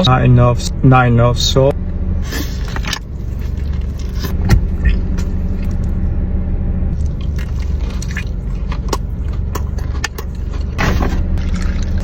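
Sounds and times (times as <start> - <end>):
low hum: 0.0 - 12.0
crunchy chewing of fried food: 2.3 - 6.0, 6.9 - 12.0.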